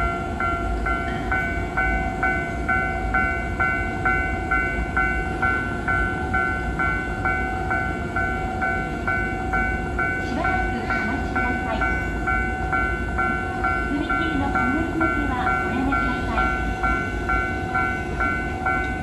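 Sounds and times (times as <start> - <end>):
level-crossing alarm chiming: 0.0 - 19.0.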